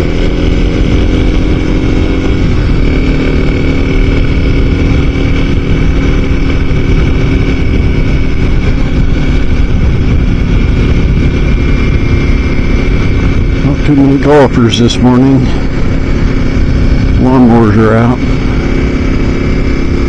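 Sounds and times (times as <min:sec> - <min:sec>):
motorcycle engine running: 0:00.0 - 0:20.0
wind rush: 0:00.0 - 0:20.0.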